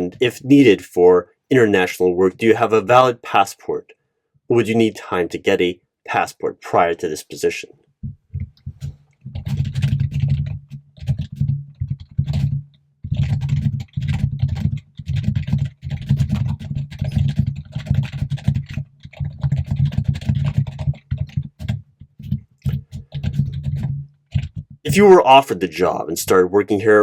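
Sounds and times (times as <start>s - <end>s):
fast typing on computer keyboard: 8.3s - 24.9s.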